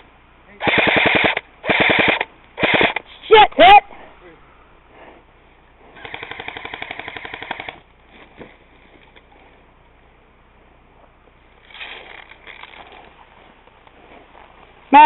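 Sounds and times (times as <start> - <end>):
airsoft gun firing rapid burst: 0.6 - 3.0, 6.0 - 7.8.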